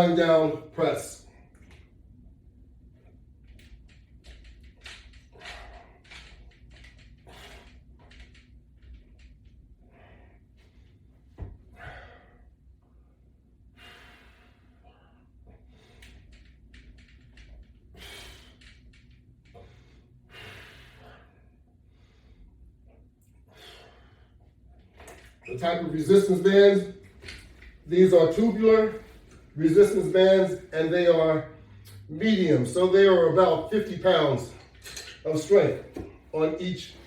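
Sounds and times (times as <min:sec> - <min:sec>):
man breathing hard: 0:05.0 - 0:09.0, 0:09.8 - 0:25.3.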